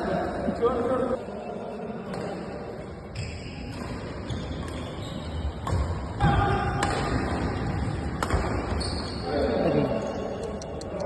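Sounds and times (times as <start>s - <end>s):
racket striking shuttlecock: 5.6s - 8.8s.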